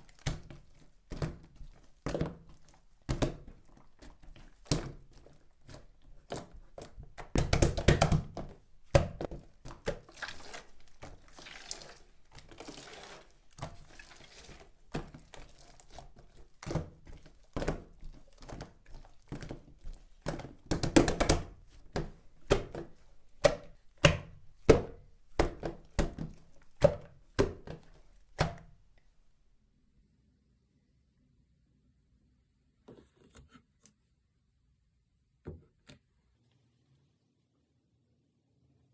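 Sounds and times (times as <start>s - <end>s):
slime squishing: 0.0s - 29.1s.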